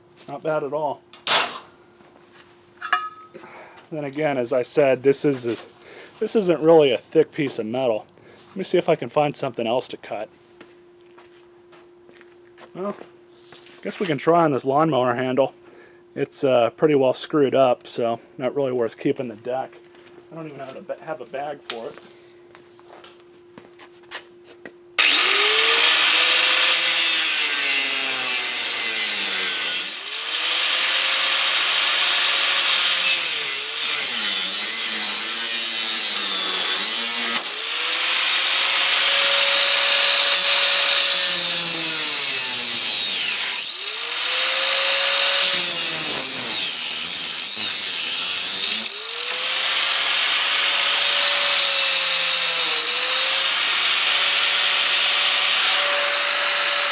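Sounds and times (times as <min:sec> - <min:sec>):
angle grinder cutting metal: 0:25.0 - 0:56.9.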